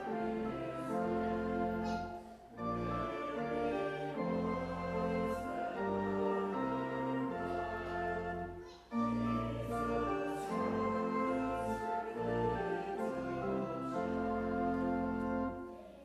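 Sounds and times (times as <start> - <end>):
congregation singing a hymn: 0.0 - 15.9
organ chords: 0.0 - 15.9.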